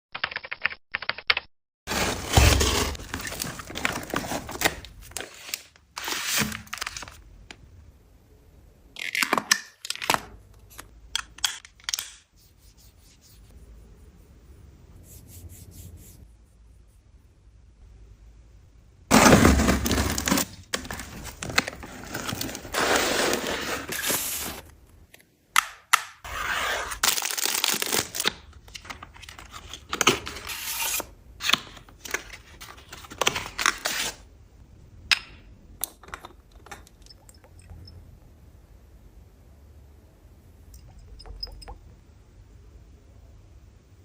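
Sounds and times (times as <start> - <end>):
packaging tearing and crinkling: 1.9 - 7.2, 19.1 - 23.9, 27.0 - 30.7.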